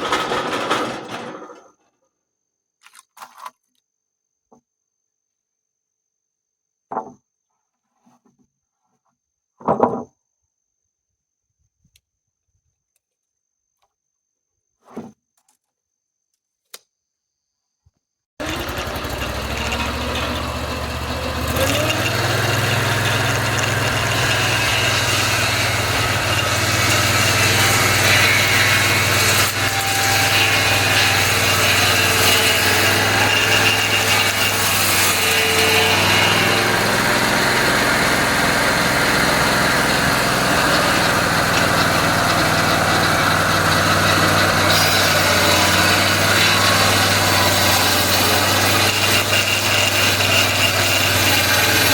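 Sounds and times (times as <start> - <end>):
small petrol engine running: 0.0 - 1.5, 18.4 - 51.9.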